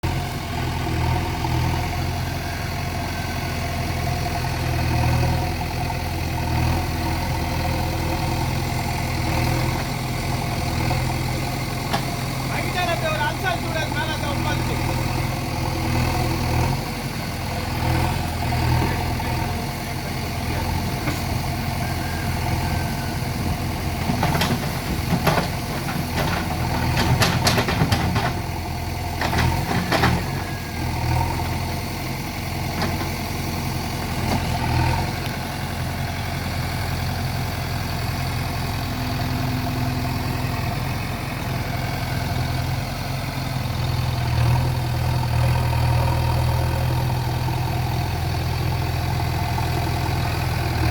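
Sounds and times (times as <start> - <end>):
diesel engine droning: 0.0 - 50.9
sharp knocks and clanks: 24.0 - 28.5, 29.2 - 30.4.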